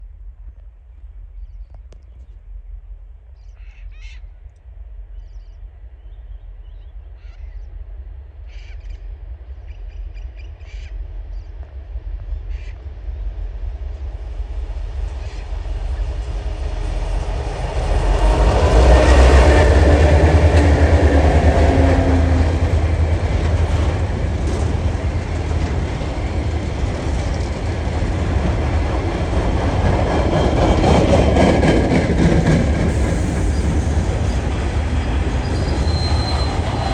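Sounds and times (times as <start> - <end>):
diesel locomotive engine hum: 0.0 - 36.9
train wagons rolling rumble: 11.5 - 36.9
wheel squeal: 35.4 - 36.9.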